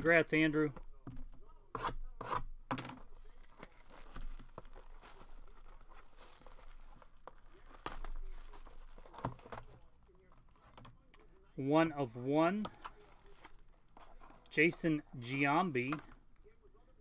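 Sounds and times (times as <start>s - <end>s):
packaging tearing and crinkling: 3.2s - 9.8s.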